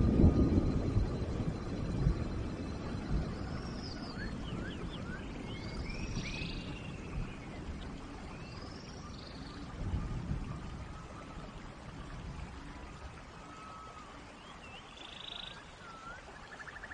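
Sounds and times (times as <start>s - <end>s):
low rumble: 0.0s - 11.5s
steady rain: 0.0s - 16.9s
birds chirping and whistling: 3.3s - 7.6s.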